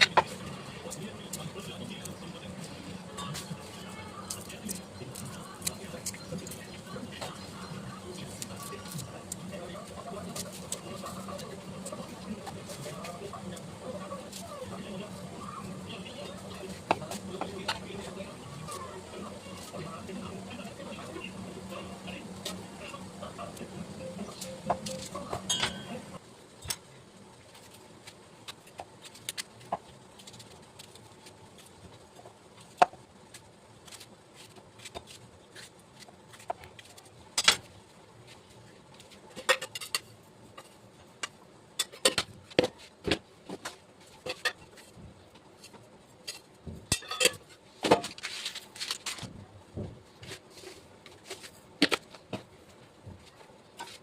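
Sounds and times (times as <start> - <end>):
utensils and dishes clattering: 19.6 - 26.2, 39.3 - 40.8, 44.2 - 44.9, 45.6 - 48.2.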